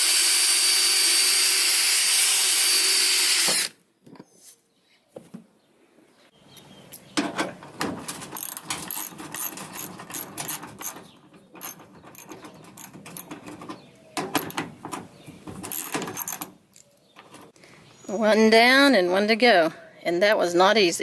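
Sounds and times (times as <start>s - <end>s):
hand tools and metal clattering: 6.5s - 17.6s.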